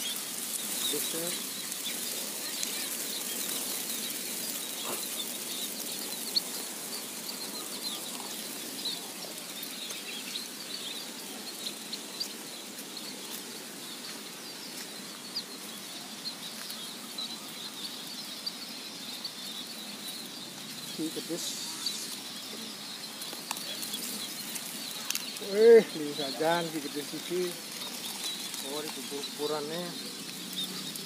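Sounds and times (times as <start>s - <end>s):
small birds chirping: 0.0s - 31.0s
steady high hiss: 0.0s - 31.0s.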